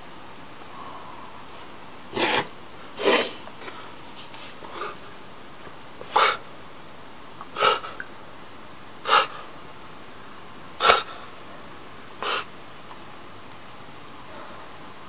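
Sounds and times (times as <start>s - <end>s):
pet sneezing: 2.1s - 5.1s, 6.0s - 6.5s, 7.5s - 8.1s, 9.0s - 9.5s, 10.8s - 11.3s, 12.2s - 13.1s.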